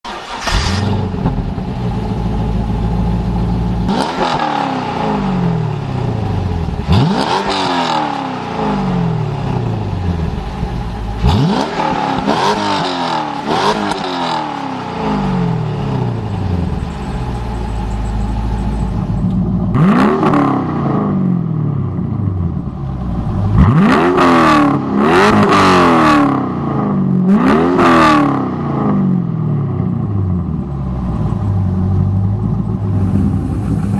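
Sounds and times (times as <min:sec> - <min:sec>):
car engine idling: 0:00.1 - 0:03.9, 0:08.9 - 0:11.5, 0:15.2 - 0:19.9, 0:21.4 - 0:24.9, 0:30.0 - 0:33.9
car engine revving: 0:00.1 - 0:33.9.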